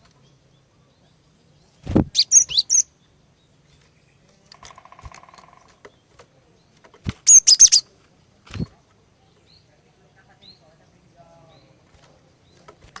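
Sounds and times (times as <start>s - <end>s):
bird chirping rapidly: 0.2s - 4.2s, 4.8s - 7.9s.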